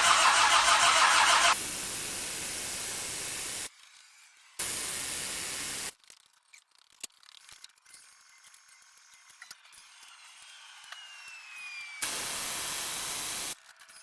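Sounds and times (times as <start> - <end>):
diesel engine cranking: 0.0 - 1.6
steady hissing: 4.6 - 5.9, 12.0 - 13.6.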